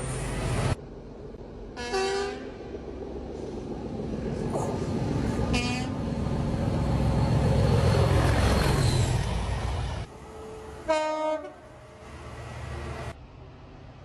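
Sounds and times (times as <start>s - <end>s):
train passing with low rumble: 0.0s - 14.0s
train horn toot: 1.8s - 2.5s, 10.5s - 11.7s.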